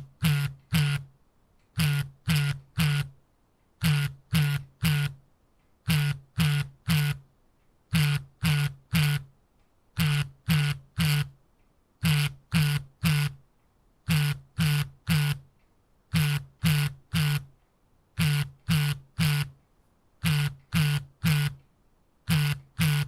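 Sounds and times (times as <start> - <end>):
smartphone vibrating buzzes: 0.0 - 1.2, 1.8 - 3.2, 3.8 - 5.2, 5.8 - 7.3, 7.9 - 9.3, 10.0 - 11.4, 12.0 - 13.4, 14.1 - 15.5, 16.1 - 17.6, 18.2 - 19.6, 20.2 - 21.6, 22.2 - 23.0.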